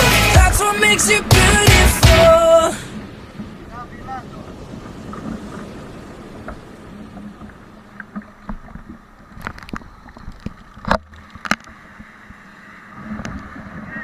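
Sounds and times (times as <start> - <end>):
water washing: 0.0 - 14.0
wind: 0.0 - 14.0
paddle knocks and splashes: 4.4 - 12.1.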